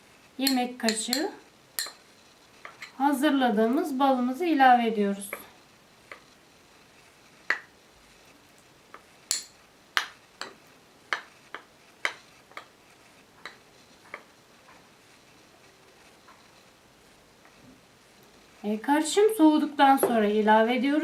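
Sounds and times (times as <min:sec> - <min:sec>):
spoon clinking against dish: 0:00.4 - 0:02.0, 0:09.3 - 0:09.6.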